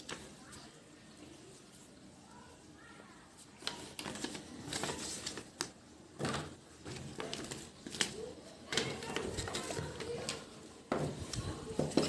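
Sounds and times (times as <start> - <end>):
packaging clicks and rustles: 3.6 - 10.5.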